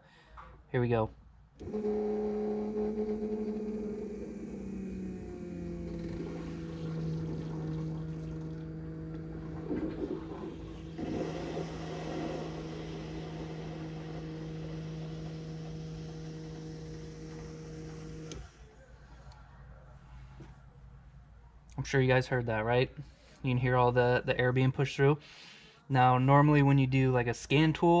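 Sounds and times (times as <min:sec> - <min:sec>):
electric fuel pump humming: 0:01.5 - 0:19.5
gurgling bursts: 0:01.8 - 0:17.6.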